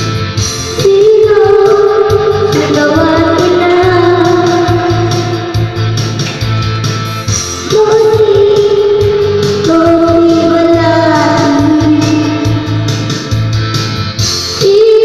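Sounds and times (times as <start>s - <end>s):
guitar: 0.0s - 15.0s
pulsing bass: 0.0s - 15.0s.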